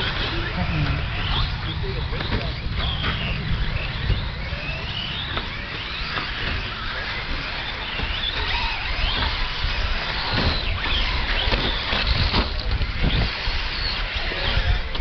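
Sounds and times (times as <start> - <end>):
rc truck motors whining: 0.0 - 15.0
wind rumble on microphone: 0.0 - 15.0.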